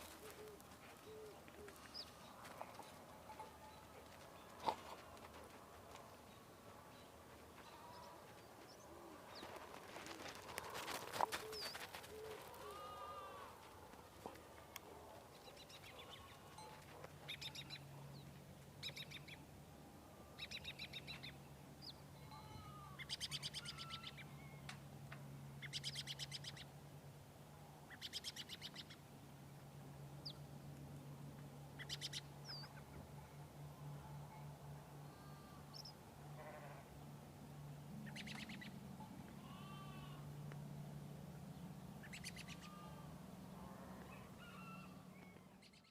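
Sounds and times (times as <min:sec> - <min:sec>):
sheep bleating: 0:12.6 - 0:13.6, 0:22.3 - 0:23.0, 0:36.4 - 0:36.9, 0:39.4 - 0:40.3, 0:42.6 - 0:44.1
small birds chirping: 0:31.8 - 0:32.9, 0:38.0 - 0:38.8, 0:42.0 - 0:42.8.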